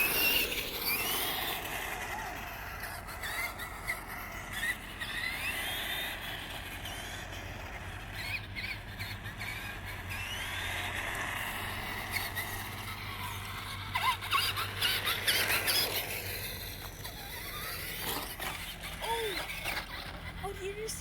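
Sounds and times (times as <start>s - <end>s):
toy car motor whining: 0.0s - 21.0s.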